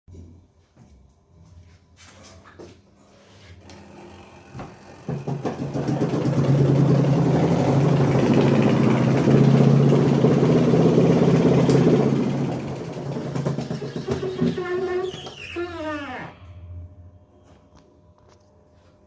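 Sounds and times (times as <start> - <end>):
washing machine motor hum: 2.6 - 17.6
loud rattling clatter: 5.0 - 14.9.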